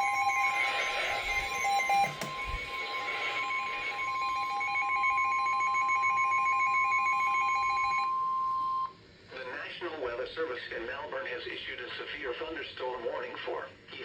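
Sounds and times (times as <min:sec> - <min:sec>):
pulsing beep: 0:00.0 - 0:08.9
steady high alarm tone: 0:00.0 - 0:08.9.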